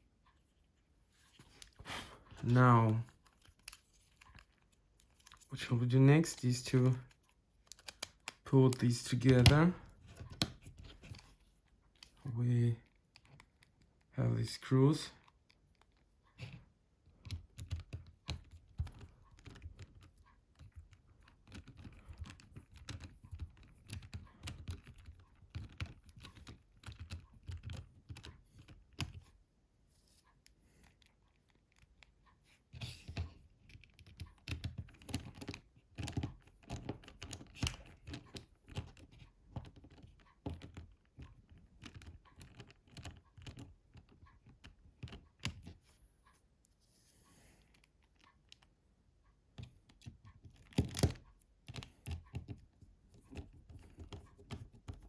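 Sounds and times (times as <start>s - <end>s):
screwdriver clicking on plastic: 7.0s - 11.3s, 15.2s - 29.2s, 33.1s - 45.8s, 49.6s - 55.0s.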